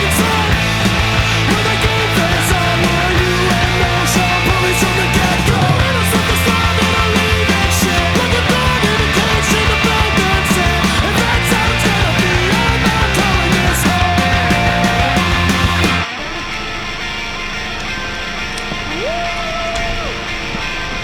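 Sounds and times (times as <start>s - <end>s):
steady drum beat: 0.0s - 16.1s
distorted rock guitars: 0.0s - 21.0s.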